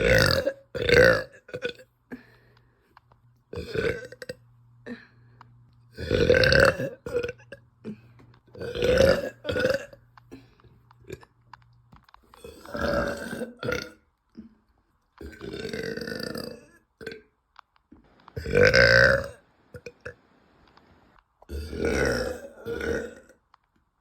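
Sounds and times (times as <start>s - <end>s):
woman burping loudly: 0.0s - 2.2s, 3.5s - 5.2s, 5.9s - 11.4s, 12.4s - 14.6s, 15.2s - 17.3s, 18.4s - 20.2s, 21.5s - 23.4s.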